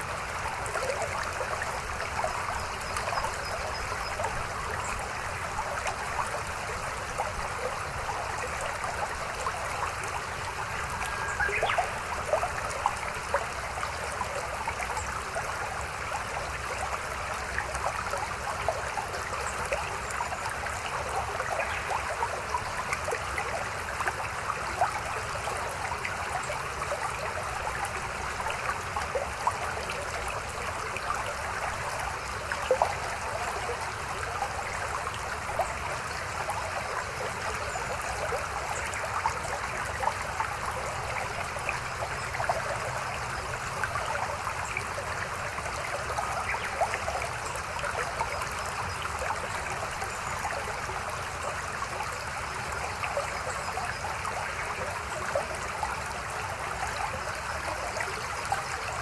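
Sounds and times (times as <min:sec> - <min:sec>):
stream flowing over rocks: 0:00.0 - 0:59.0
water splashes and trickles: 0:00.0 - 0:59.0.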